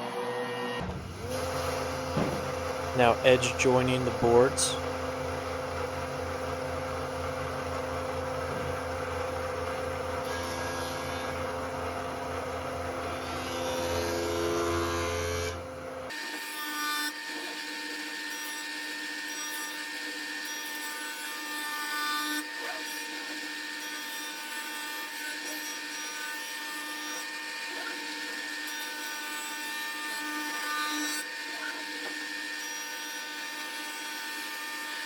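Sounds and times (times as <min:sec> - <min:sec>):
power tool running: 0:00.0 - 0:35.0.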